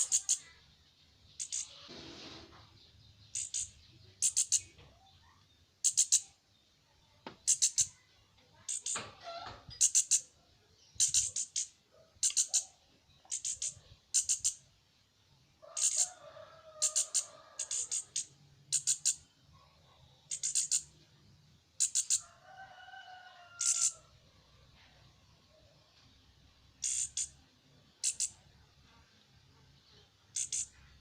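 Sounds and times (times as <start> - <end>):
bird chirping: 0.0 - 19.4, 20.2 - 21.0, 21.7 - 22.2, 26.7 - 29.0, 29.6 - 31.0.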